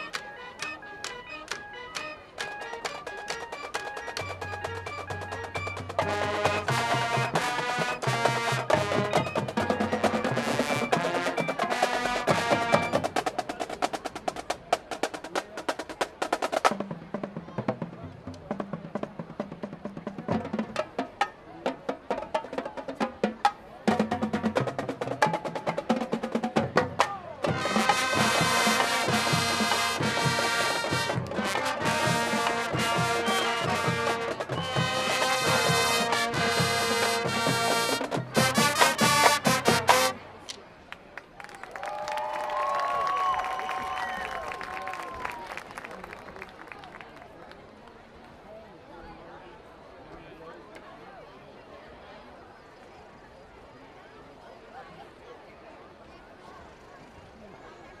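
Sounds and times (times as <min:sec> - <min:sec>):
drum line playing: 0:00.0 - 0:40.2
marching band playing: 0:00.0 - 0:40.4
brass section holding chords: 0:06.0 - 0:09.2, 0:27.5 - 0:40.2
steady drum beat: 0:23.9 - 0:40.1.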